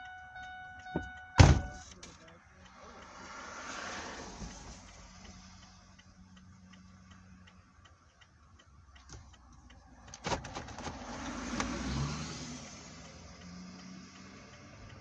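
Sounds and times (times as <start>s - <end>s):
turn signal ticking: 0.0s - 15.0s
car door opening clunk: 0.9s - 2.0s.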